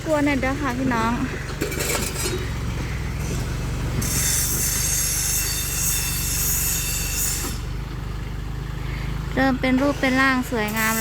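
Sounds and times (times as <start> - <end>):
tractor engine running: 0.0 - 11.0
shrill metallic squeal: 4.0 - 7.6.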